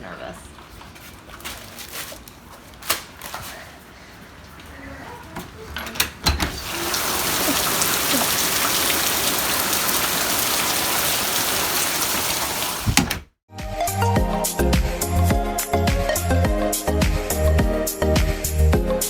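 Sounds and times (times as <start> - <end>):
rain falling: 6.6 - 13.0.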